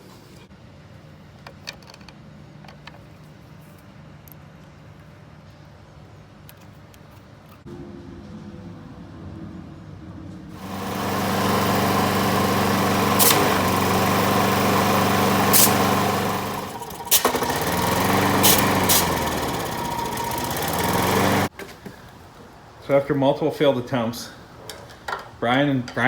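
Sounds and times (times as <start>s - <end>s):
lawn mower engine running: 10.6s - 21.5s
engine pops: 15.2s - 21.5s.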